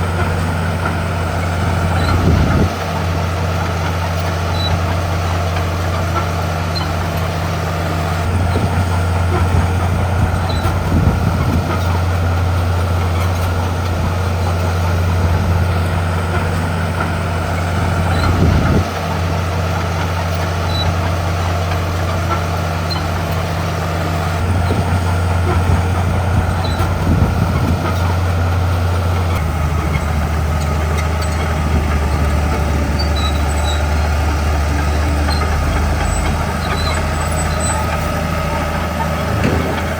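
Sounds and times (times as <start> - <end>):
bulldozer diesel engine under load: 0.0 - 39.9
metal clanks: 35.1 - 39.9.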